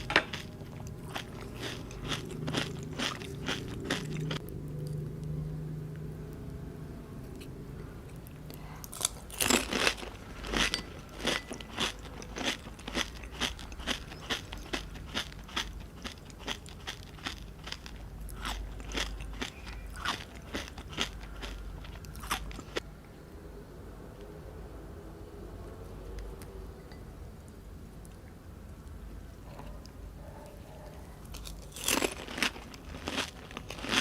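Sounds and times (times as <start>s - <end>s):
chewing crunches: 0.0s - 5.4s, 8.1s - 22.8s, 31.2s - 34.0s
crunchy bite: 31.3s - 34.0s.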